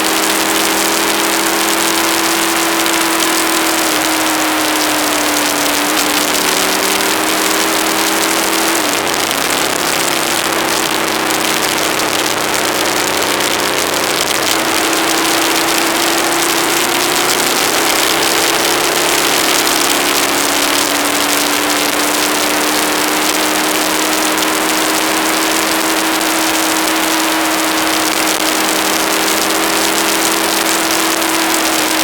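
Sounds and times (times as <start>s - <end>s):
motorcycle engine running: 0.0s - 32.0s
wind noise on microphone: 0.0s - 32.0s.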